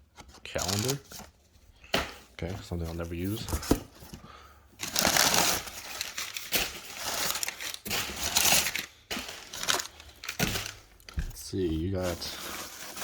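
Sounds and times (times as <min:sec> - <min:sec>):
packaging crinkling and rustling: 0:00.1 - 0:01.5, 0:04.8 - 0:13.0.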